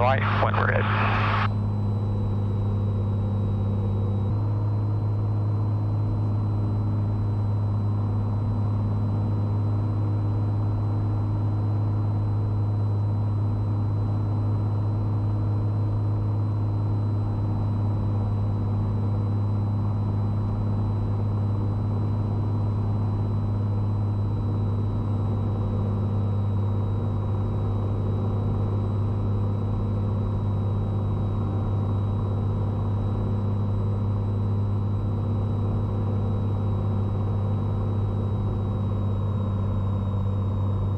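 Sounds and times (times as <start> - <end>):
aircraft engine and propeller droning: 0.0 - 40.9.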